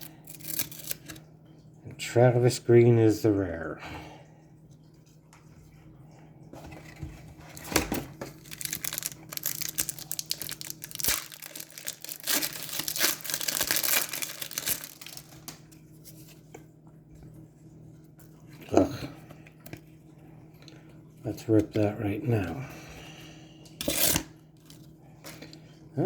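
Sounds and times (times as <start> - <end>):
card wrapper crinkling and tearing: 0.0 - 1.2, 7.4 - 16.3.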